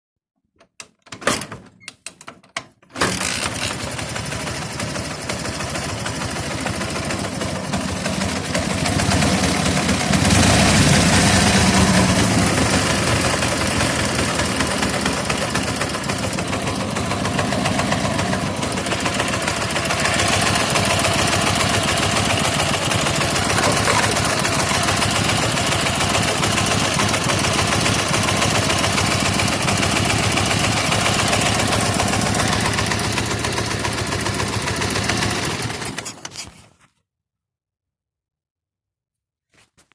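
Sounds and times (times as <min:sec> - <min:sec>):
engine sputtering: 0:07.2 - 0:35.9
motorcycle engine knocking: 0:11.8 - 0:35.4.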